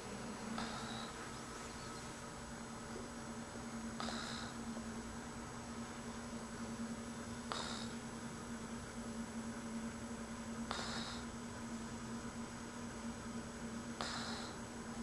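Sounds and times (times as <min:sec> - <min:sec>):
steady low hum: 0:00.0 - 0:15.0
child snoring: 0:00.6 - 0:01.2, 0:04.0 - 0:04.6, 0:07.4 - 0:08.0, 0:10.6 - 0:11.3, 0:14.0 - 0:14.6.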